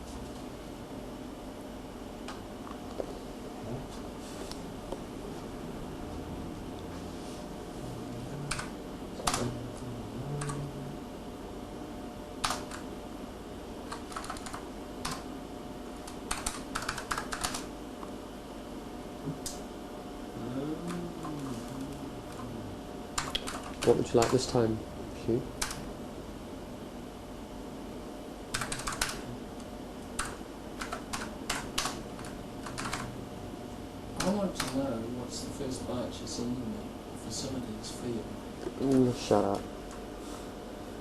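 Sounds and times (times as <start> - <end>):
steady electrical hum: 0.0 - 41.0
low hum: 3.4 - 12.5, 18.7 - 23.8
computer keyboard typing: 8.5 - 9.5, 10.4 - 10.6, 12.4 - 12.9, 13.9 - 15.3, 16.0 - 17.7, 23.2 - 24.4, 25.6 - 25.8, 28.5 - 29.3, 30.2 - 33.1, 34.2 - 34.8
room hiss: 18.2 - 41.0.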